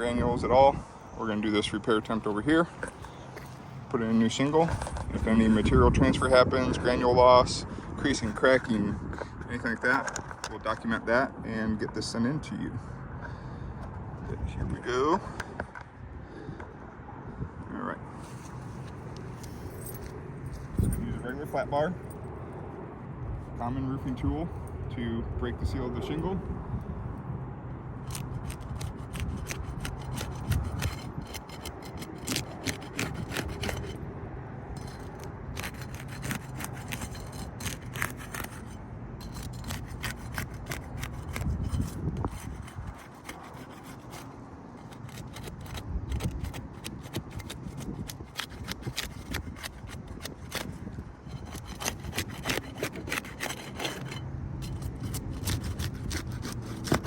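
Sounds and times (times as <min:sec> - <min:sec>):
metal bar scraping roof shingle: 0:28.1 - 0:34.0, 0:34.8 - 0:57.0.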